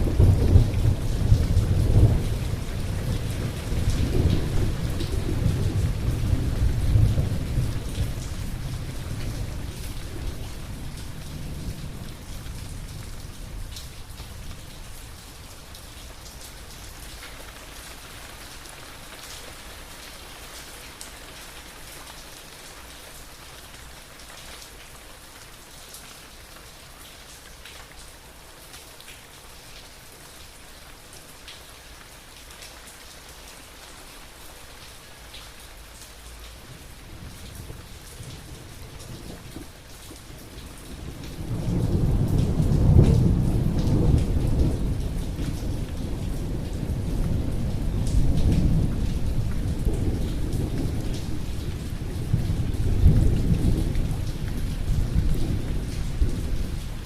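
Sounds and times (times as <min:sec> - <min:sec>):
thunder rumbling: 0:00.0 - 0:13.8, 0:41.0 - 0:57.0
steady rain falling: 0:00.0 - 0:57.0.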